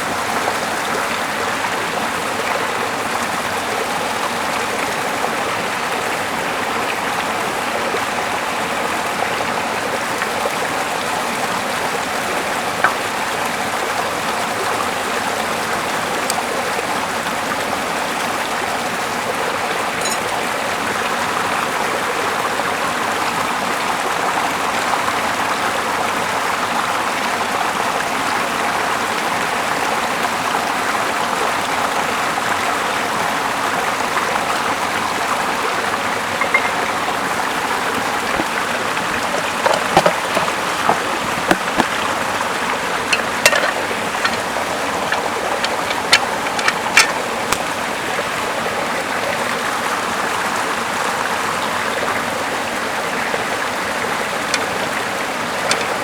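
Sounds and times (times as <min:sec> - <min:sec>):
flowing water rushing: 0:00.0 - 0:56.0.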